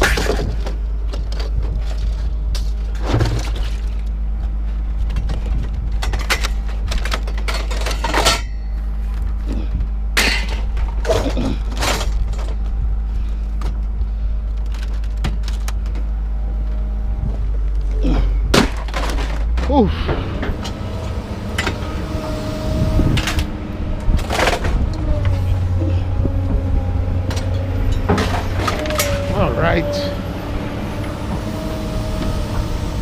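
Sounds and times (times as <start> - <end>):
low rumble: 0.0 - 33.0
scrap metal crashing: 18.0 - 22.1, 23.0 - 25.6, 27.2 - 29.3.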